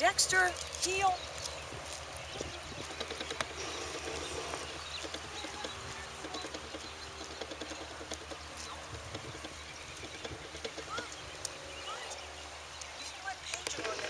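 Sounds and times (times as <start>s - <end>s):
footsteps: 0.4s - 11.5s
small clicks and rustles: 0.5s - 14.0s.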